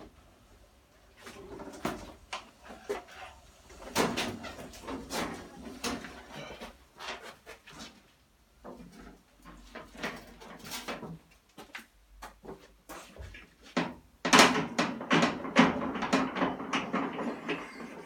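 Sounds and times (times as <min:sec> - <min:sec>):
motorcycle knocks and rattles: 0:13.8 - 0:17.5.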